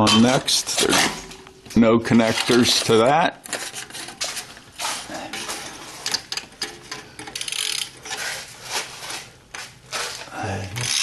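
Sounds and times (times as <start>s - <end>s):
metal clicks and clanks: 6.0s - 8.2s.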